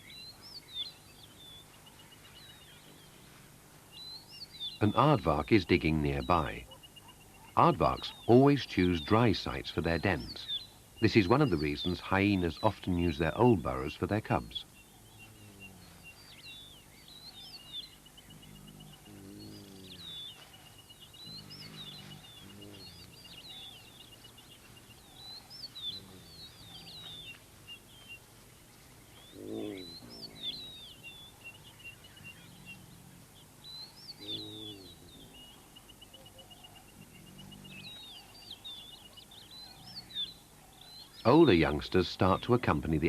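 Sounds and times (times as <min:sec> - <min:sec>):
birds chirping: 0:00.0 - 0:43.0
low animal calls: 0:13.0 - 0:41.8.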